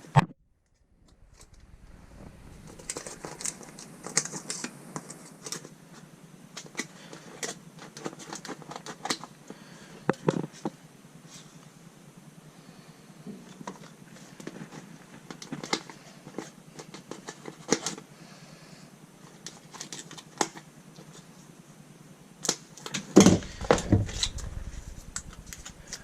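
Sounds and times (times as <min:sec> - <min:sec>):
sound-deadening mat crackling: 0:23.3 - 0:26.0.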